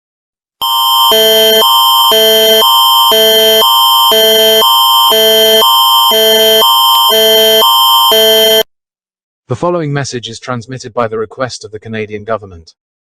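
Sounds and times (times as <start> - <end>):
constant high tone: 0.6 - 8.6
electronic two-chord alarm: 0.6 - 8.7.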